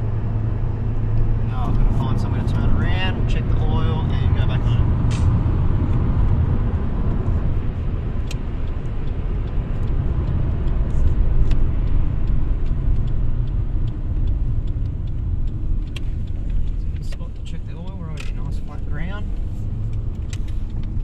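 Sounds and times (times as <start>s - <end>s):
engine low rumble: 0.0s - 21.0s.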